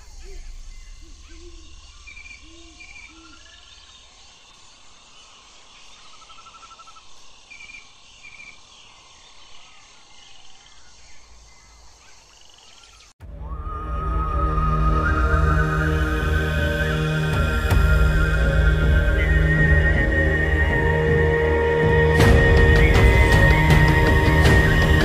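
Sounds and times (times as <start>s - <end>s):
insects hissing: 0.0s - 13.1s.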